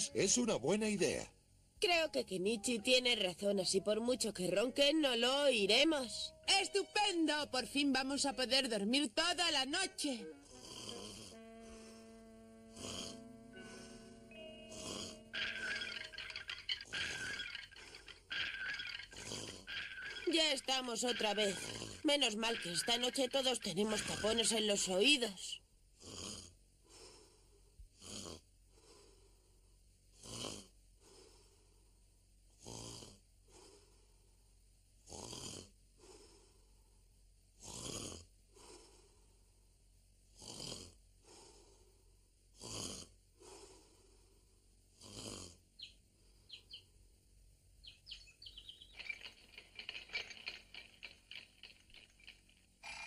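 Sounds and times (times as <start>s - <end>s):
cartoon snoring: 10.4s - 20.2s, 21.2s - 22.9s, 26.0s - 26.6s, 28.0s - 28.4s, 30.2s - 30.7s, 32.6s - 33.2s, 35.1s - 35.8s, 37.6s - 38.9s, 40.3s - 41.6s, 42.6s - 43.9s, 45.0s - 45.6s.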